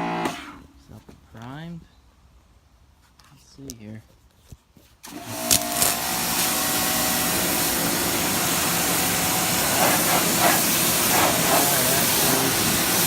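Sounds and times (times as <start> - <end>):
electric pressure washer running: 5.1 - 13.0
water spray hissing: 5.1 - 13.0.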